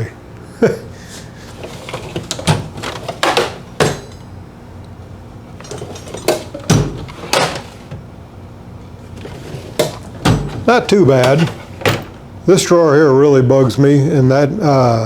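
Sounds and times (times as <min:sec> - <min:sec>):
metal drawers clunking: 0:01.1 - 0:04.4, 0:05.3 - 0:12.4.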